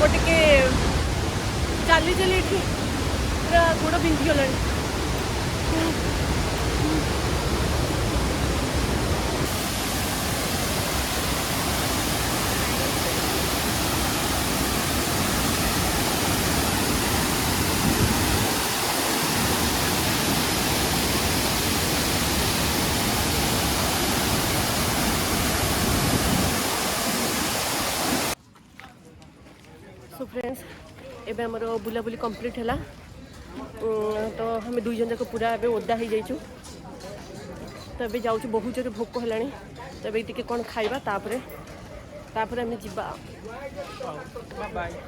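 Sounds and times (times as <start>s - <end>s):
waterfall roaring: 0.0s - 28.4s.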